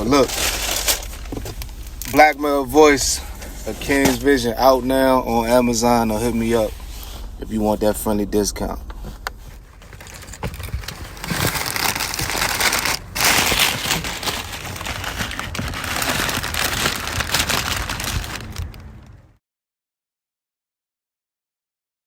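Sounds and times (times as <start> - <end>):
packaging crinkling and rustling: 0.0 - 4.4, 8.9 - 19.2.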